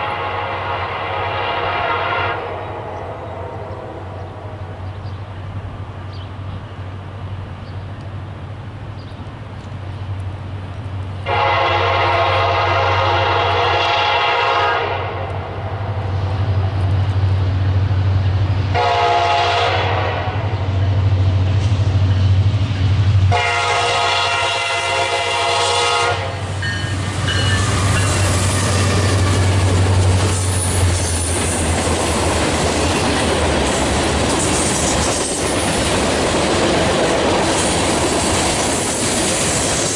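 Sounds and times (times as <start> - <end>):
locomotive air horn blasts: 0.0 - 4.2, 11.3 - 15.3, 18.7 - 20.6, 23.3 - 29.5
locomotive engine drone: 14.9 - 39.9
train wheels clattering on rails: 26.5 - 39.9.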